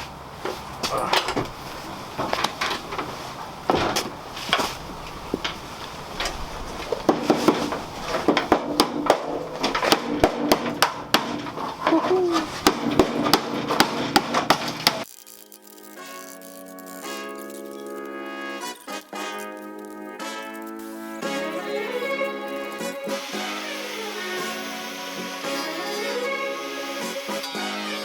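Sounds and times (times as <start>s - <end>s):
sharp hammer-like taps: 7.0s - 15.0s.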